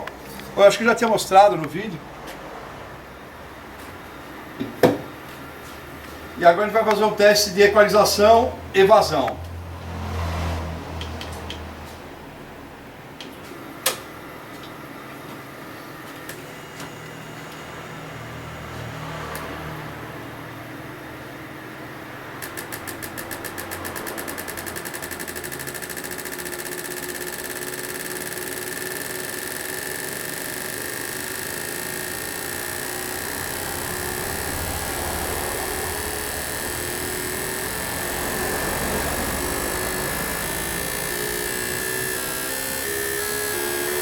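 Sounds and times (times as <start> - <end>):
pump and motor hum: 13.7 - 44.0
fuel injectors clicking rapidly: 22.4 - 44.0.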